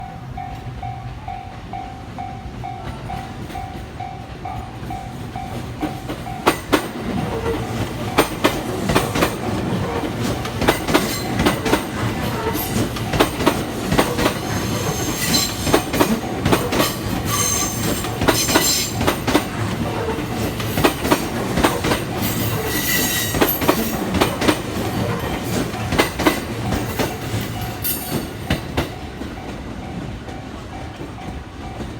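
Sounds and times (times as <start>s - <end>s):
train wheels clacking: 0.4s - 31.9s
train wheels squealing: 8.9s - 29.6s.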